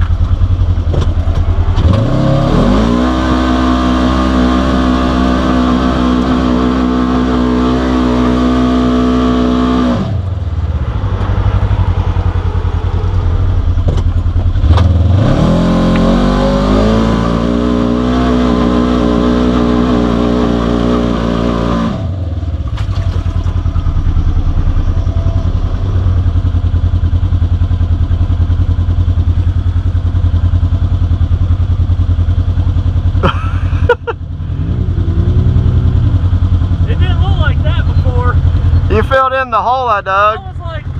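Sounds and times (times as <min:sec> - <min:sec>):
engine revving: 0:00.0 - 0:40.9.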